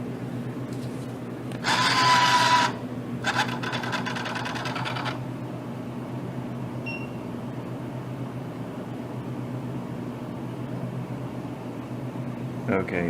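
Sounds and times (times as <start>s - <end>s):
bill acceptor motor whirring: 1.6s - 5.2s.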